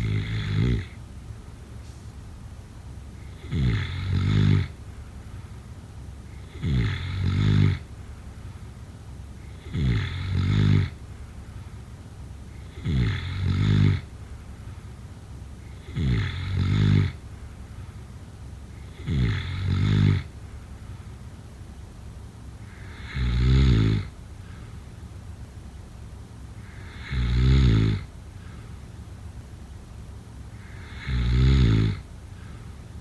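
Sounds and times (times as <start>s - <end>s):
person snoring: 0.0s - 1.0s, 3.2s - 4.8s, 6.4s - 7.8s, 9.5s - 11.0s, 12.7s - 14.0s, 15.8s - 17.2s, 18.9s - 20.3s, 22.7s - 24.1s, 26.6s - 28.1s, 30.6s - 32.0s.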